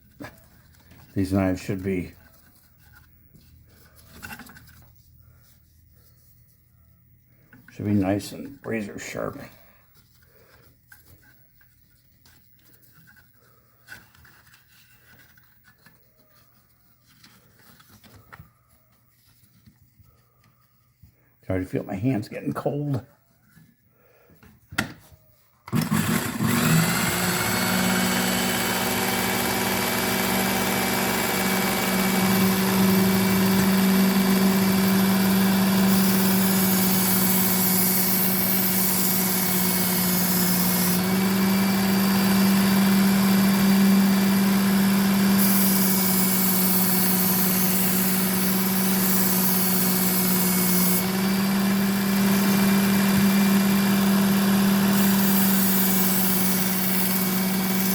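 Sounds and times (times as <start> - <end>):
sharpener motor humming: 25.7 - 57.9
knife grinding on abrasive belt: 25.8 - 57.9.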